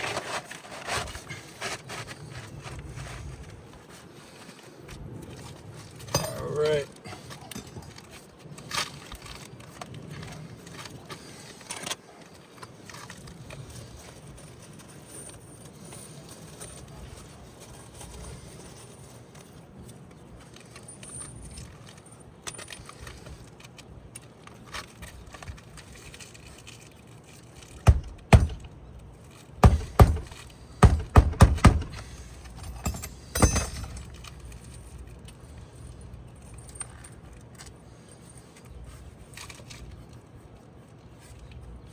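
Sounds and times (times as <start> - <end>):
hammer knocking nails: 27.9 - 28.7, 29.6 - 34.1.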